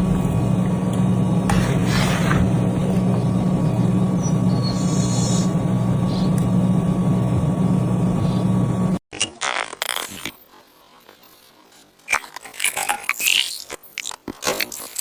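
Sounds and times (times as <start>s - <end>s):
motor humming and whirring: 0.0s - 9.0s.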